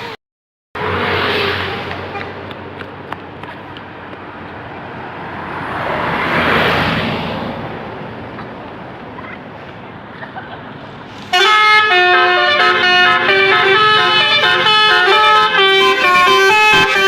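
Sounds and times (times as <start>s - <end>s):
musical air horn tune: 11.3s - 17.0s.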